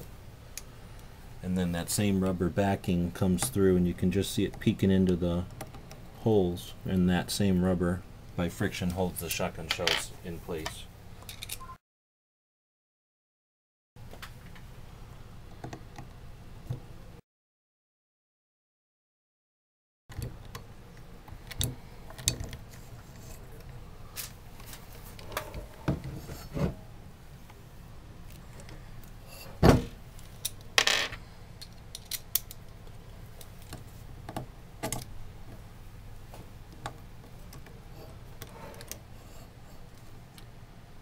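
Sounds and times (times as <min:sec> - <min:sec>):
shotgun parts clicking and clacking: 0:30.2 - 0:32.7.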